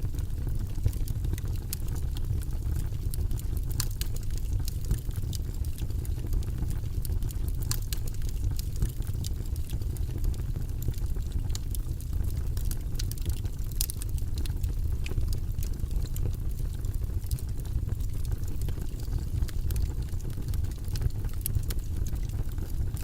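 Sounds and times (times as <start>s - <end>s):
fire crackling and popping: 0.0s - 23.0s
fire flames rumbling: 0.0s - 23.0s.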